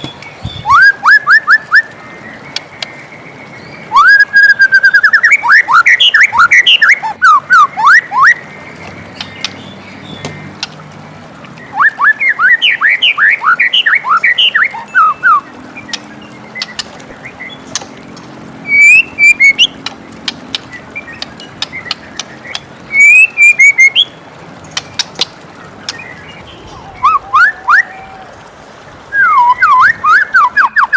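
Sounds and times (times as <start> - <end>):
bird singing whistled notes: 0.0 - 10.5, 11.6 - 17.7, 18.6 - 19.8, 20.7 - 24.2, 29.1 - 30.9
sharp clicks: 19.7 - 22.7, 24.7 - 26.1.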